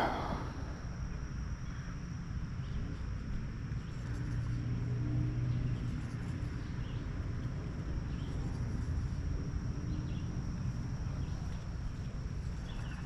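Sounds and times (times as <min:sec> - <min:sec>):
insect buzz: 0:00.0 - 0:03.2.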